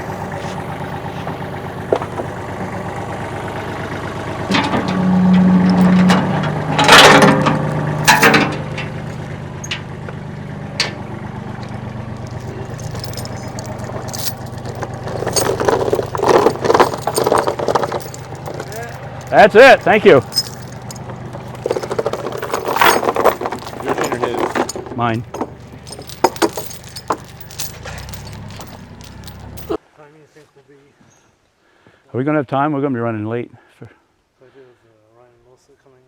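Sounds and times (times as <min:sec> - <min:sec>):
clattering: 0:00.0 - 0:03.0, 0:03.6 - 0:10.2, 0:10.8 - 0:11.1, 0:12.2 - 0:29.8
metallic clanks: 0:00.0 - 0:11.2, 0:12.2 - 0:29.8
lift machine engine running: 0:00.0 - 0:29.8.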